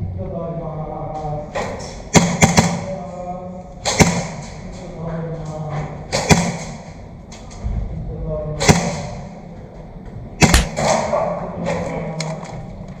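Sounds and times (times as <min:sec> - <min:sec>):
airsoft gun shots: 0:10.4 - 0:10.9.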